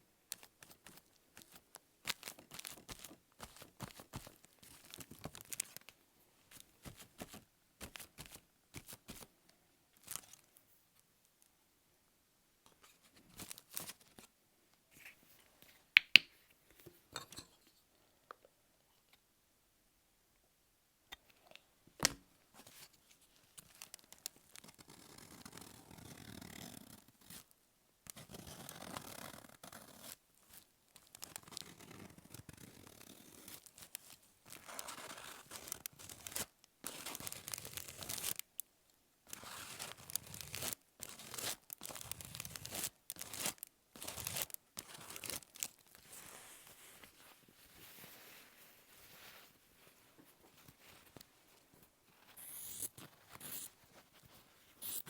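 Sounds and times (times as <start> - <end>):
paper crinkling: 0.3 - 5.9, 33.3 - 38.4, 39.3 - 55.0
paper tearing: 52.4 - 53.8.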